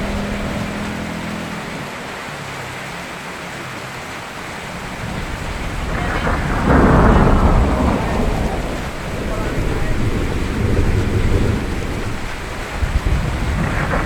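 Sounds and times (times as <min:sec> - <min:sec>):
steady rain falling: 0:00.0 - 0:14.0
thunder rumbling: 0:04.6 - 0:14.0.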